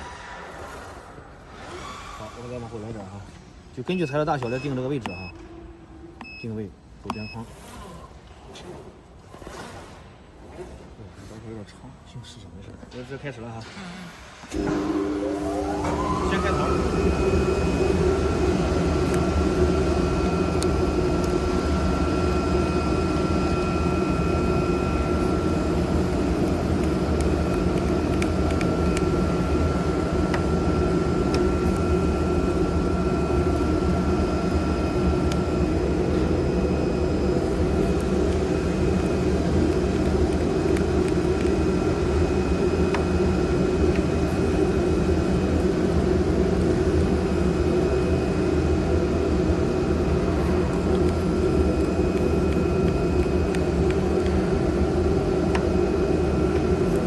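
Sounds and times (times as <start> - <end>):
cutting machine drone: 14.5 - 57.0.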